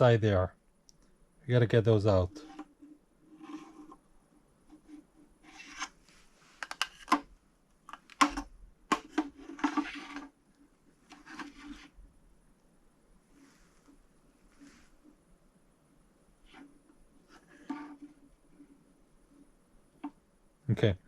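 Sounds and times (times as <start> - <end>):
scraping and rubbing strokes: 2.1 - 7.2, 8.9 - 10.4, 11.0 - 12.0, 13.3 - 15.2, 16.4 - 19.5.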